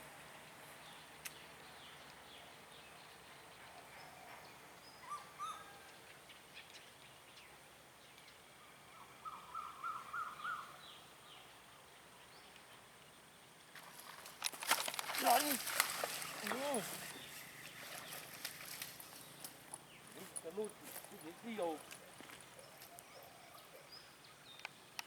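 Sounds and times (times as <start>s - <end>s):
faint outdoor hiss: 0.0s - 25.0s
bird calling: 5.0s - 6.0s, 8.9s - 10.9s, 14.6s - 24.8s.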